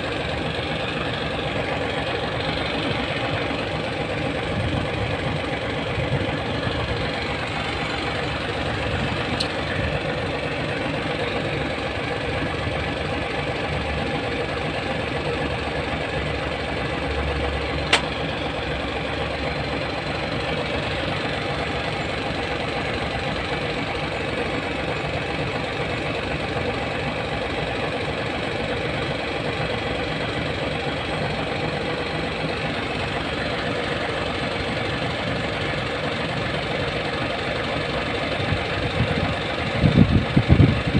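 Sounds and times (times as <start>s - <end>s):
diesel engine idling: 0.0s - 40.9s
sharp click: 17.9s - 18.2s.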